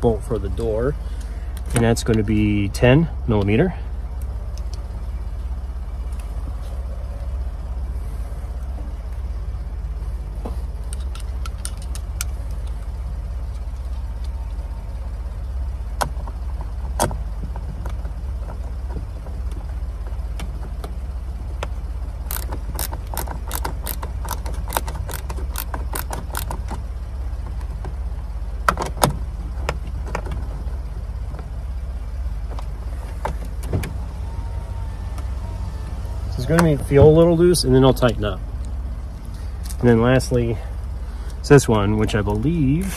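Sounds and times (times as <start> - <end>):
low rumble: 0.0 - 22.8
sharp clicks and knocks: 21.6 - 26.8
hand ratchet clicking: 22.3 - 26.6.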